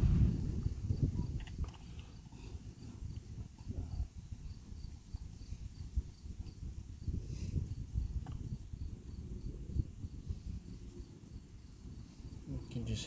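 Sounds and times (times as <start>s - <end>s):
rumble of microphone handling: 0.0s - 2.2s, 5.9s - 8.9s.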